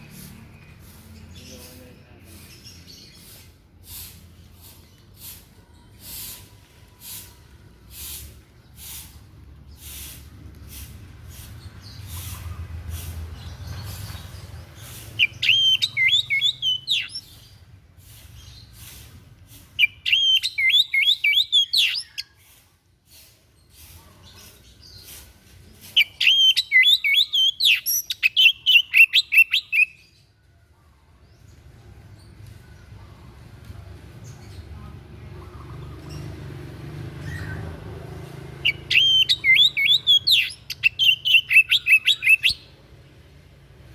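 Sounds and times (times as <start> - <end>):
high bird twittering: 11.7 - 17.6, 19.8 - 22.4, 26.0 - 30.0, 37.2 - 42.8
songbird calling: 14.8 - 17.6, 19.8 - 22.4, 26.0 - 30.0, 38.6 - 42.7.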